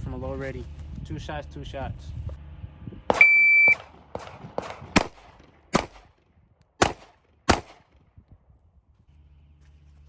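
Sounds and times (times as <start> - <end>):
pistol shots: 3.1 - 6.2, 6.8 - 8.0
shot timer beep: 3.2 - 3.8.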